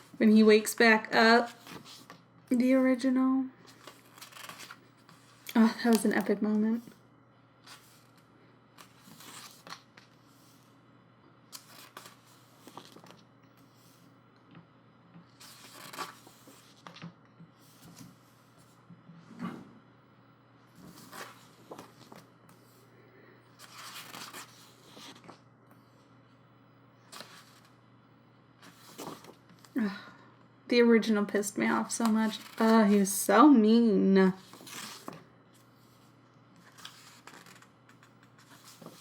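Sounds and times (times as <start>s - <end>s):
pages being turned: 1.5s - 2.2s, 3.7s - 6.3s, 7.6s - 10.7s, 11.5s - 14.0s, 15.3s - 18.8s, 20.7s - 22.6s, 23.6s - 25.4s, 27.1s - 27.8s, 28.6s - 29.4s, 32.0s - 33.0s, 34.4s - 35.2s, 36.6s - 39.0s.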